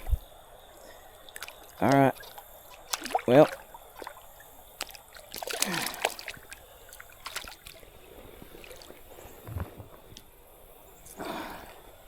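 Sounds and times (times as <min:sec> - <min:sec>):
water drips: 0:01.1 - 0:10.3
fish thrashing in water: 0:01.3 - 0:09.1.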